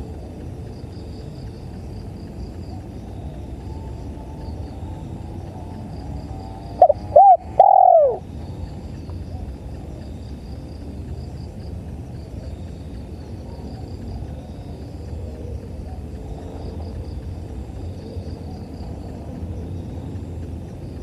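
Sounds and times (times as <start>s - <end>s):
crickets chirping: 0.0s - 21.0s
steady low hiss: 0.0s - 21.0s
dove cooing: 6.5s - 8.3s.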